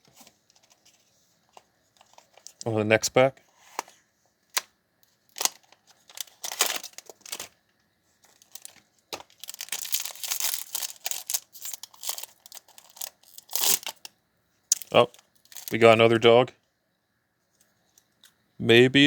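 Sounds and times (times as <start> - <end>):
wrapper crinkling and tearing: 5.3 - 7.6, 8.3 - 14.1, 14.7 - 15.9.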